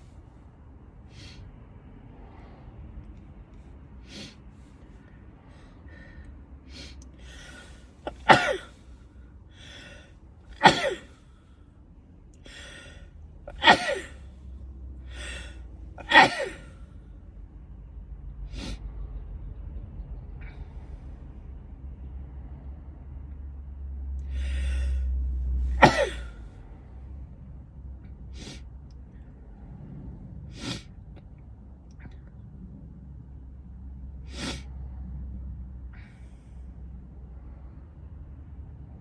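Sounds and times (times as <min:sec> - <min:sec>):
gasping in-breaths: 0:04.0 - 0:11.6, 0:12.4 - 0:14.3, 0:15.0 - 0:16.9, 0:24.2 - 0:26.4
woman sneezing: 0:08.1 - 0:08.7, 0:10.6 - 0:11.0, 0:13.5 - 0:14.2, 0:16.0 - 0:16.6, 0:25.8 - 0:26.3.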